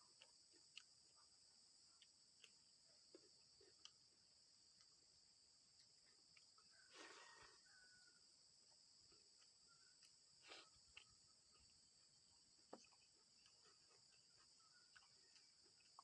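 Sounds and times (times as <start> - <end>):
crickets chirring: 0.0 - 16.0.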